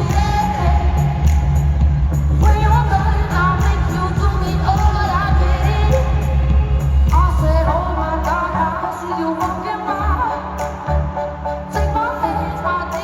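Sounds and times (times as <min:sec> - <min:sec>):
heavy steady bass: 0:00.0 - 0:13.0
live pop band: 0:00.0 - 0:13.0
woman singing: 0:00.0 - 0:13.0.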